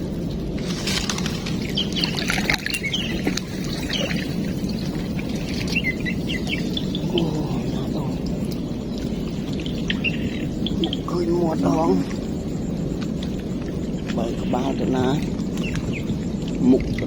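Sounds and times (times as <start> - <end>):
steady low rushing noise: 0.0 - 16.6
high bird chirps: 1.6 - 8.0, 9.3 - 11.3, 13.9 - 16.2.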